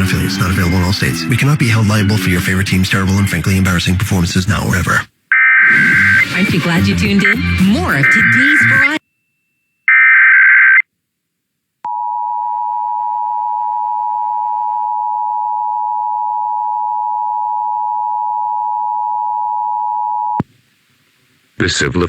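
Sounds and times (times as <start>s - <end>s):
two-tone attention signal: 7.2s - 8.9s.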